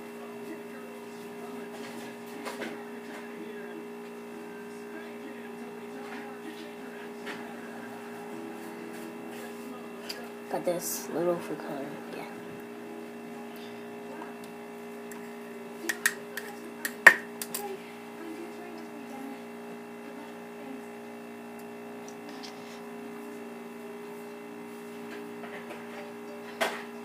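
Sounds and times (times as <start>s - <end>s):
steady electrical hum: 0.0s - 27.0s
small objects clicking and tapping: 15.9s - 17.6s.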